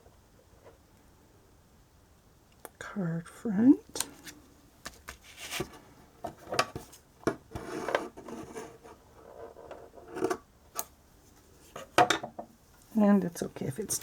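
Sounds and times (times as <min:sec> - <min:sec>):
cardstock rustling and rubbing: 0:04.0 - 0:05.8.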